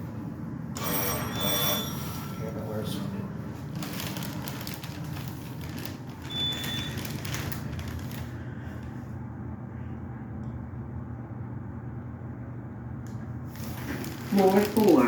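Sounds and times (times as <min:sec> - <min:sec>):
low steady hum: 0:00.0 - 0:15.0
alarm bell ringing: 0:00.8 - 0:02.4
rustling crackling noise: 0:03.5 - 0:09.0, 0:13.5 - 0:15.0.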